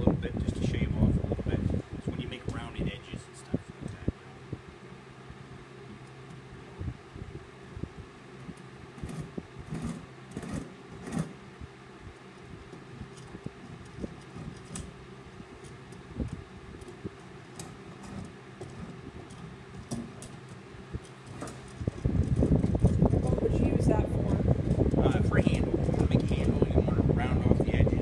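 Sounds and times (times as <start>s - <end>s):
steady background hum: 0.0s - 28.0s
spokeshave shaving wood: 8.3s - 26.8s.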